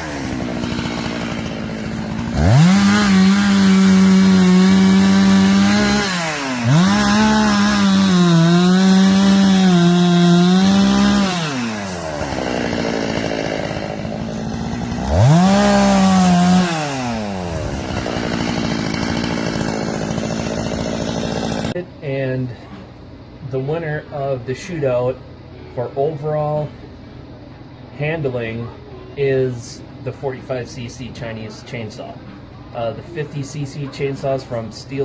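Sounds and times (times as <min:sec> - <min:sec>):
chainsaw revving: 0:00.0 - 0:21.8.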